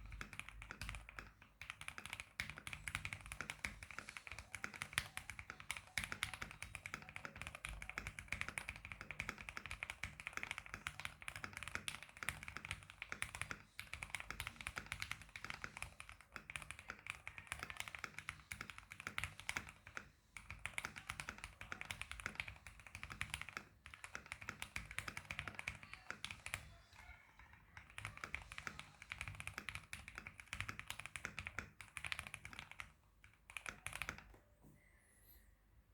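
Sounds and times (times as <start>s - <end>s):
mechanical keyboard typing: 0.0s - 34.3s.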